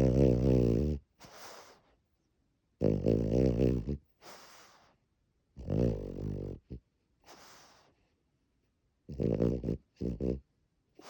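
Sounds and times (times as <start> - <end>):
dog snoring: 0.0 - 1.7, 2.8 - 4.8, 5.6 - 6.8, 9.1 - 10.4.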